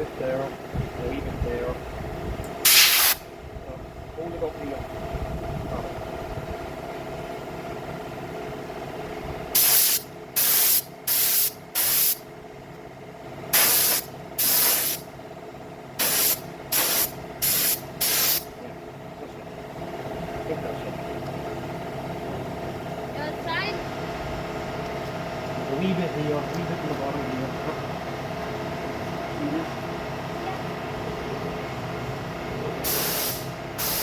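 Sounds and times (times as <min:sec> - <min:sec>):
spray paint hissing bursts: 0:02.6 - 0:03.2, 0:09.6 - 0:12.2, 0:13.5 - 0:15.0, 0:16.0 - 0:18.5, 0:32.8 - 0:34.0.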